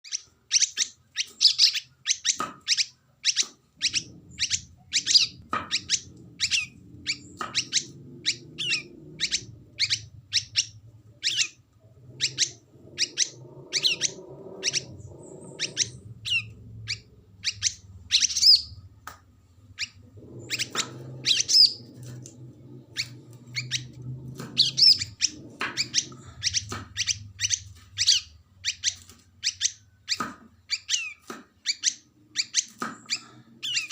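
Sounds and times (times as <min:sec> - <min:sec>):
songbirds chirping: 0:00.0 - 0:33.9
faint low hum: 0:03.2 - 0:30.8
bird sweeping notes: 0:03.3 - 0:18.8, 0:19.8 - 0:29.8.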